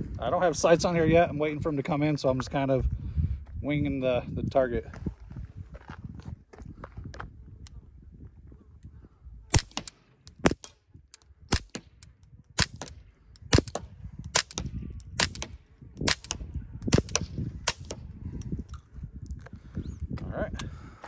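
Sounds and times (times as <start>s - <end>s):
suppressed pistol shots: 9.5s - 18.1s.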